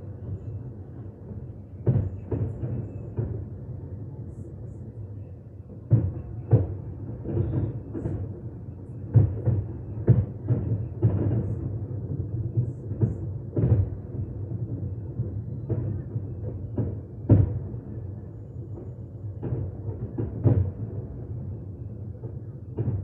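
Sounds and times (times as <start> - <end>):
fireworks booming: 9.1 - 21.6, 22.2 - 23.0.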